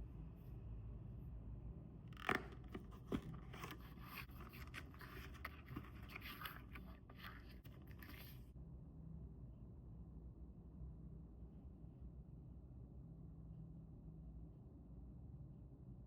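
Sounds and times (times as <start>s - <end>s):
scraping and rustling packaging: 2.2s - 8.5s.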